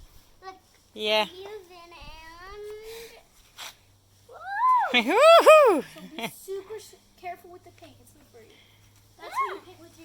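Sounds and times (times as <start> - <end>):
soft scuff: 3.4 - 3.8
child whooping: 4.3 - 5.9, 9.2 - 9.6.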